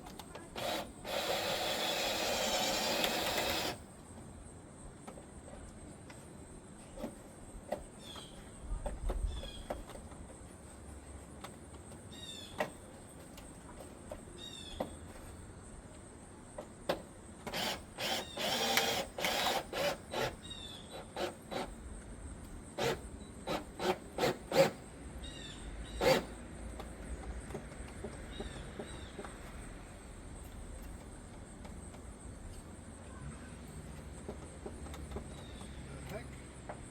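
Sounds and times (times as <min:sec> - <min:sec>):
power drill driving screw: 0:00.6 - 0:03.8, 0:17.5 - 0:20.4, 0:21.0 - 0:21.7, 0:22.8 - 0:24.8, 0:26.0 - 0:26.4.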